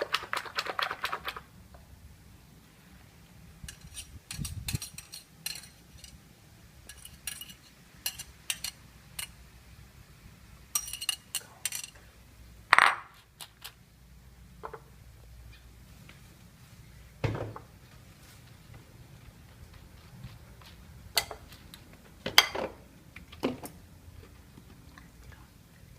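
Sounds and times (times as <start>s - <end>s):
dishes and utensils clinking: 3.7s - 6.2s, 6.9s - 9.4s, 10.7s - 12.0s.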